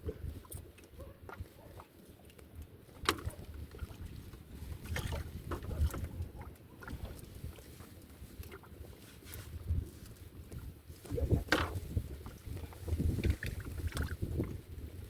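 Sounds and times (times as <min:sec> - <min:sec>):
water sloshing against raft: 0:00.0 - 0:15.0
wind on microphone: 0:03.1 - 0:15.0.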